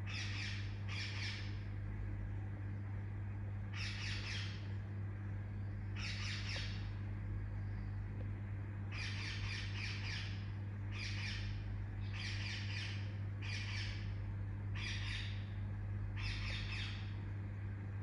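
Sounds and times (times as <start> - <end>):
steady low hum: 0.0 - 18.0
parakeet chirping: 6.0 - 6.8, 12.1 - 14.0, 14.8 - 15.4, 16.2 - 17.0.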